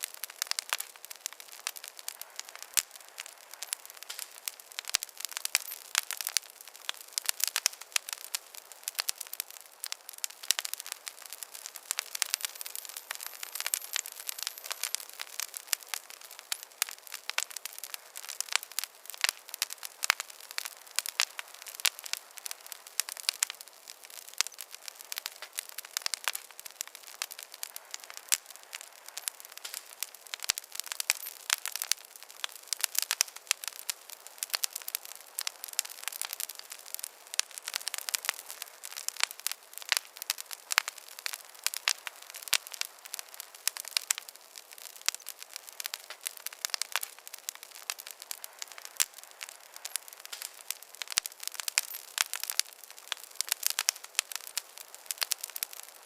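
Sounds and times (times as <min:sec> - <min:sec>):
campfire crackling: 0:00.0 - 0:56.0.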